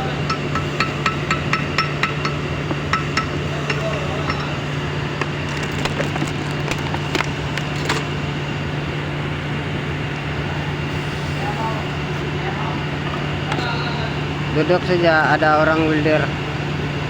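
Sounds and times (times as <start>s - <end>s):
steady low hum: 0.0s - 17.0s
light metallic taps and clinks: 0.3s - 5.3s.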